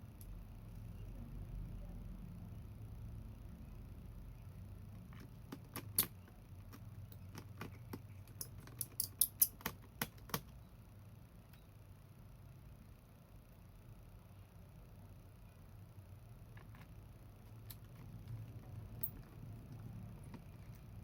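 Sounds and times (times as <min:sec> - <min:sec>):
small tools clicking and tapping: 0:04.9 - 0:10.6, 0:16.6 - 0:21.0.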